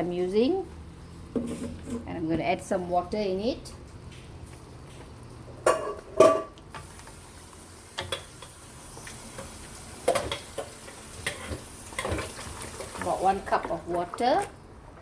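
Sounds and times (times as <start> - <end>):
chicken sizzling in oil: 6.8 - 13.5.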